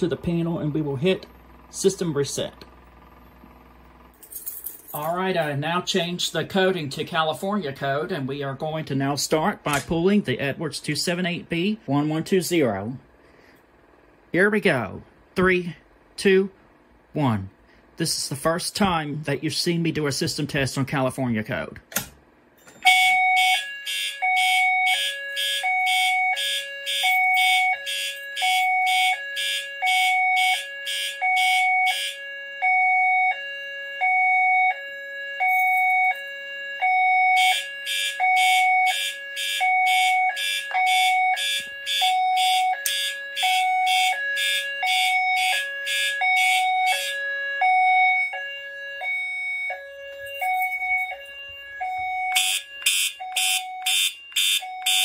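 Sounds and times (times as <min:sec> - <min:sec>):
harsh pulsing alarm horn: 0:22.8 - 0:55.0
two-tone hi-lo alarm signal: 0:22.8 - 0:55.0.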